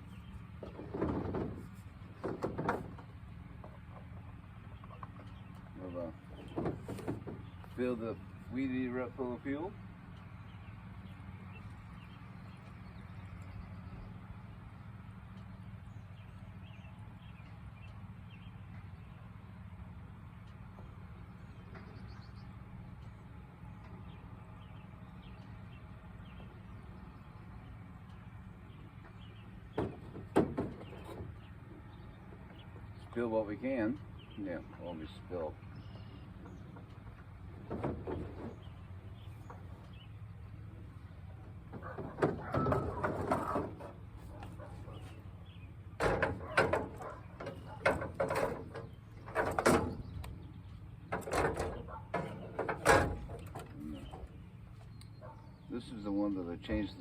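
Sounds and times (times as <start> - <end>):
sharp knocks: 29.7 - 31.3.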